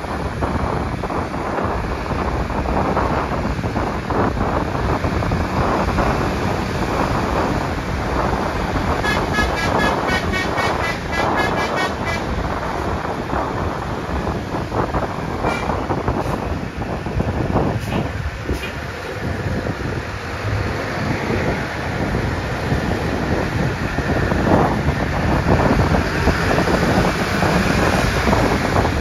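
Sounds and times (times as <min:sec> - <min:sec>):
engine and road noise: 0:00.0 - 0:29.0
bus horn playing a tune: 0:08.9 - 0:12.4, 0:15.4 - 0:15.8.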